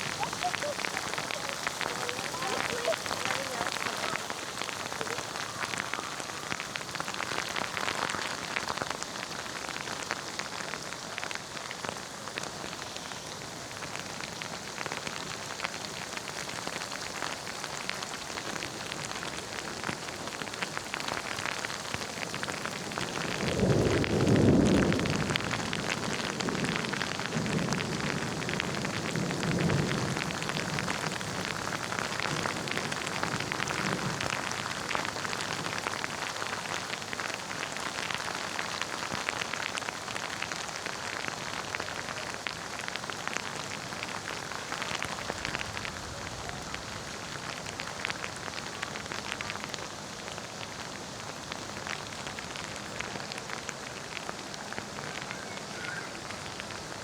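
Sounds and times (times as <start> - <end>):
thunder rumbling: 0.0 - 8.8, 22.4 - 36.1
steady rain falling: 0.0 - 57.0.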